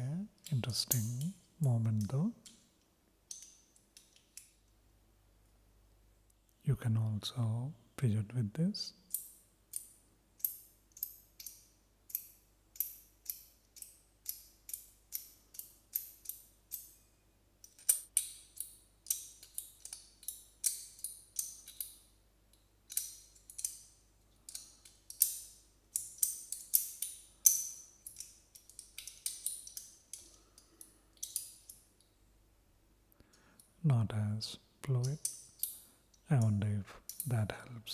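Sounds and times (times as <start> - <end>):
magnetic pieces clicking together: 3.3 - 4.6, 9.1 - 17.0, 17.6 - 32.1.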